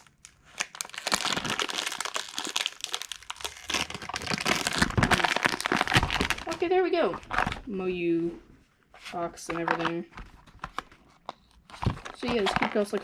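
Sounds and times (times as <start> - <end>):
packaging crinkling: 0.0 - 7.7, 10.4 - 13.0.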